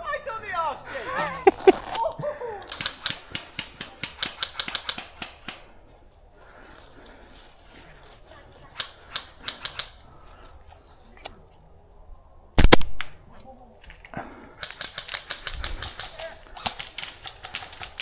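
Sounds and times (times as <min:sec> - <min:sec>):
airsoft guns firing rapid shots: 0:02.6 - 0:05.7, 0:08.7 - 0:10.0, 0:12.6 - 0:13.1, 0:14.6 - 0:18.0.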